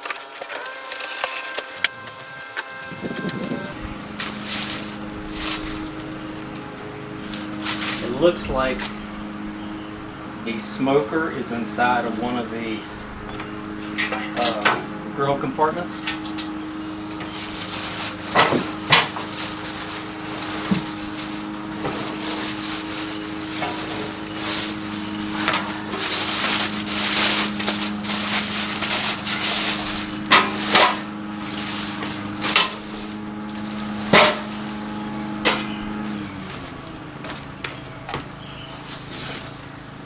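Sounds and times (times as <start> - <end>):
packing rustling and scraping: 0.0 - 9.0, 17.1 - 40.0
steady low hum: 0.0 - 40.0
metal grill parts clanking: 13.2 - 39.8.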